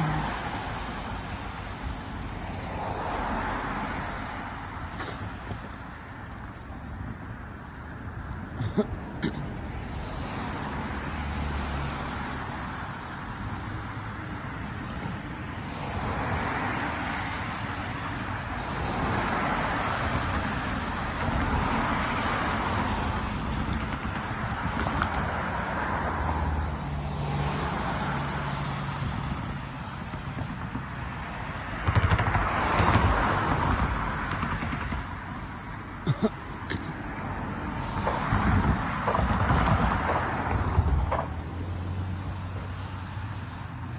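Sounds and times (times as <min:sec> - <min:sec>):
cars passing: 0:00.0 - 0:43.9
sharp knocks: 0:31.8 - 0:33.2.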